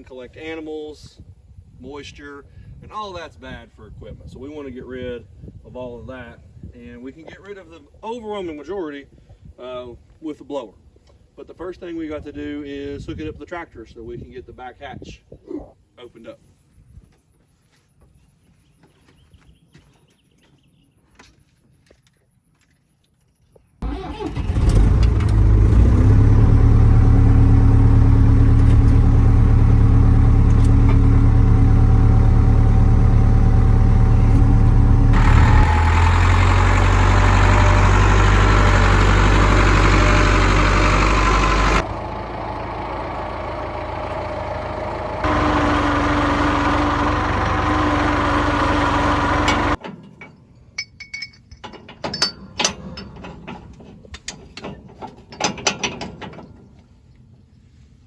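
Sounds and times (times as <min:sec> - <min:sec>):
tractor engine running: 0:23.8 - 0:49.9.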